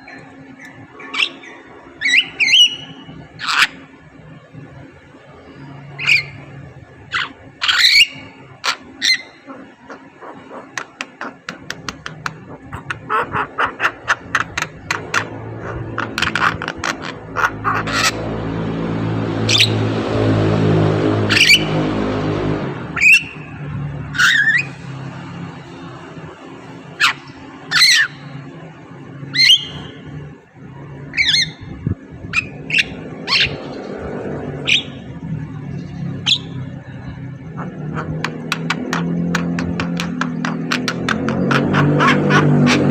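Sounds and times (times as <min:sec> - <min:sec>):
bird squawks and chirps: 0:00.0 - 0:04.0, 0:07.1 - 0:18.5, 0:23.0 - 0:24.9, 0:26.9 - 0:28.3, 0:29.3 - 0:30.1, 0:31.1 - 0:31.7, 0:32.3 - 0:35.1, 0:35.9 - 0:36.8, 0:37.4 - 0:42.9
myna harsh squawky calls: 0:07.1 - 0:18.4, 0:40.7 - 0:42.9
bird clicking notes: 0:10.8 - 0:13.0, 0:38.0 - 0:42.9.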